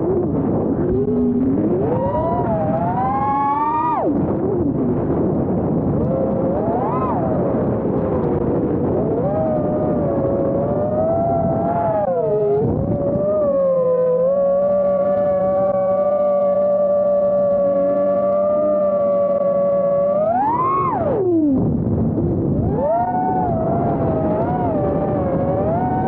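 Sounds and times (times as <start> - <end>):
drone motors whining: 0.0 - 26.0
steady rushing noise: 0.0 - 26.0.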